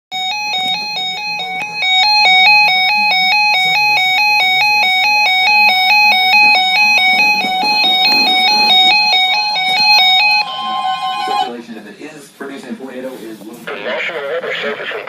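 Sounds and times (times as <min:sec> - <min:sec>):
beeping electronic melody: 0:00.1 - 0:11.5.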